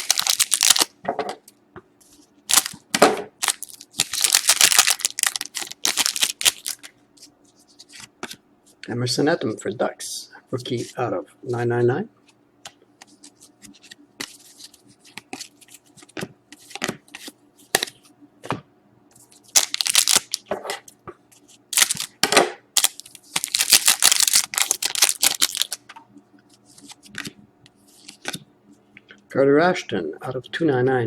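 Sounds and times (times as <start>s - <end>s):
cards being handled: 0.0s - 0.9s, 3.4s - 8.4s, 13.0s - 18.0s, 21.3s - 22.1s, 22.8s - 25.8s, 26.5s - 28.4s
foil wrapper crinkling and tearing: 0.0s - 0.9s, 2.5s - 2.8s, 3.4s - 6.9s, 19.5s - 20.5s, 21.7s - 22.2s, 22.8s - 25.8s.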